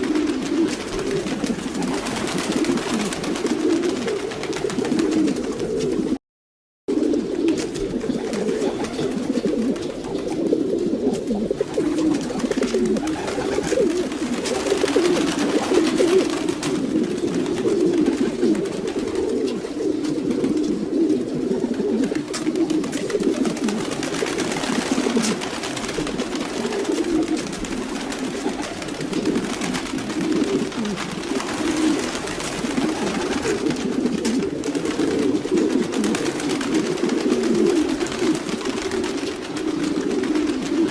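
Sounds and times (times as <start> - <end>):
pigeons cooing: 0.0 - 6.2, 6.9 - 40.9.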